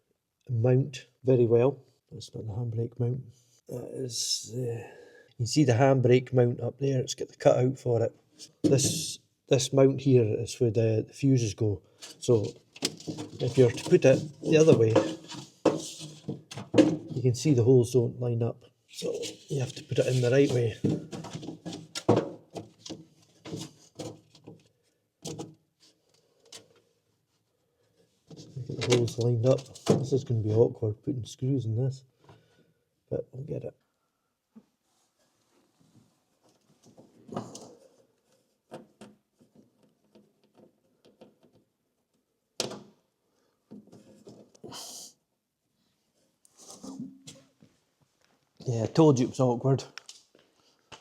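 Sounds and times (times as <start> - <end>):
scraping rustle: 12.0 - 17.1, 18.9 - 24.6.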